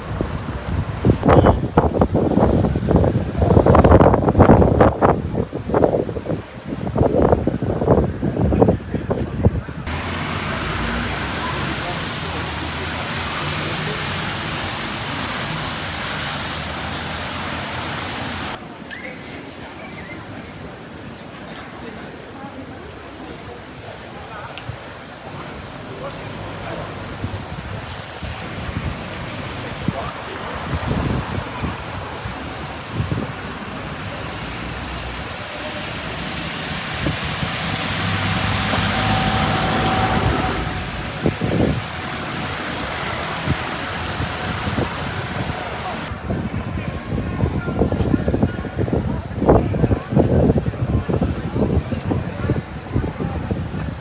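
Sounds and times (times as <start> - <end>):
wind rushing over microphone: 0.0 - 18.6, 24.6 - 54.0
city street background: 0.0 - 54.0
vehicle engine passing: 9.9 - 18.6, 28.4 - 46.1.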